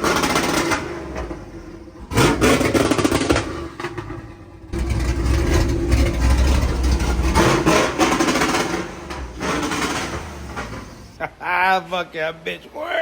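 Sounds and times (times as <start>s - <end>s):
low engine rumble: 0.0s - 11.5s
exhaust pops and bangs: 2.0s - 11.2s.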